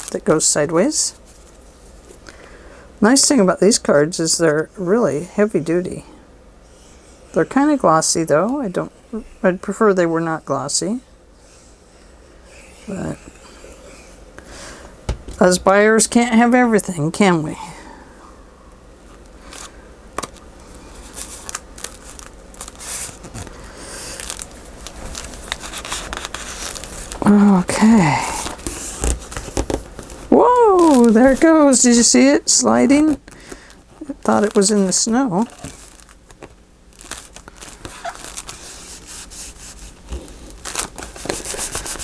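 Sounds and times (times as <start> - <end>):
paper rustling and tapping: 15.1 - 15.6, 28.4 - 31.6, 40.1 - 42.0
paper and card rustling: 19.4 - 42.0.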